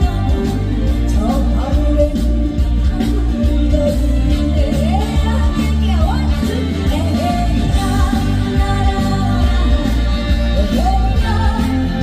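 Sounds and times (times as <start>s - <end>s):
loud pop music with bass beat: 0.0s - 12.0s
person singing: 0.0s - 12.0s.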